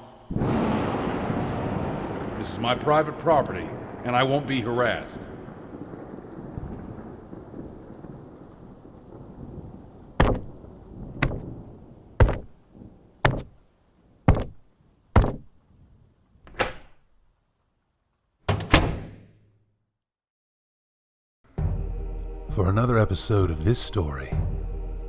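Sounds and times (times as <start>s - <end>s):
rain and storm: 0.0s - 16.5s
heavy bangs: 0.3s - 5.7s, 10.2s - 10.6s, 11.2s - 11.5s, 12.2s - 12.6s.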